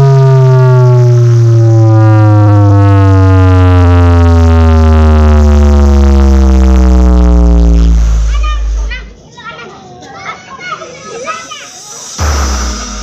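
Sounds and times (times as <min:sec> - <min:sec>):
subwoofer bass sweep: 0:00.0 - 0:09.2, 0:12.1 - 0:13.0.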